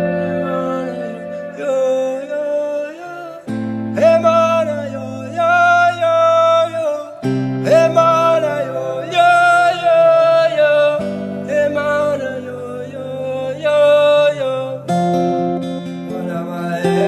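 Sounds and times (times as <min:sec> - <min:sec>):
held wavering melody line: 0:00.0 - 0:07.0
acoustic guitar chords: 0:00.0 - 0:17.0.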